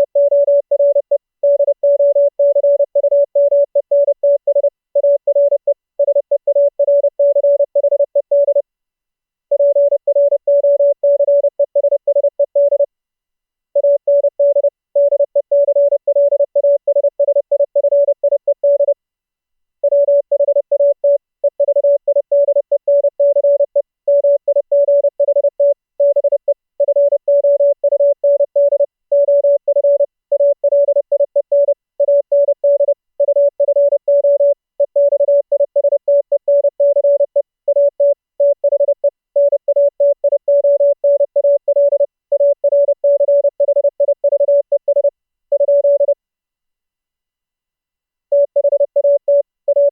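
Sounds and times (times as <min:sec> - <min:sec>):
morse code tone: 0:00.0 - 0:08.6, 0:19.8 - 0:46.2, 0:48.3 - 0:49.9.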